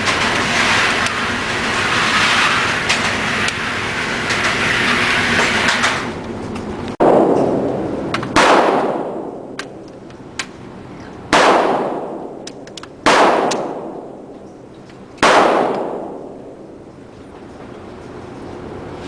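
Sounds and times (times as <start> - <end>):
gunshots with echoing ringing: 7.0 - 9.9, 11.3 - 14.4, 15.2 - 16.8.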